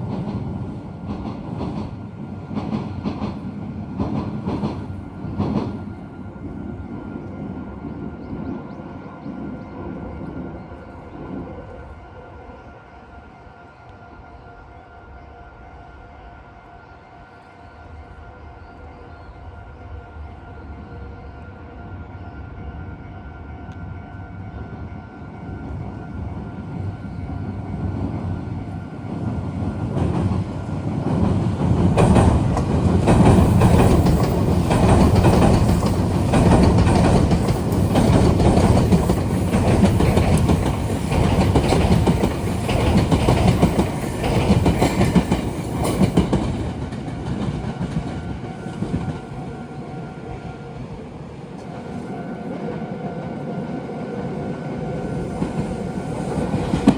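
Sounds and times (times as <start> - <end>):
train wheels knocking on rails: 29.8 - 49.1, 55.3 - 56.9.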